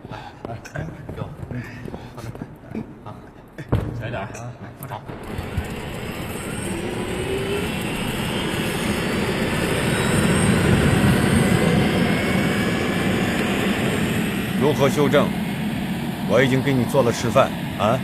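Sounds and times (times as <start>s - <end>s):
faint turbine whine: 4.9s - 18.0s
helicopter engine and rotor: 5.1s - 18.0s.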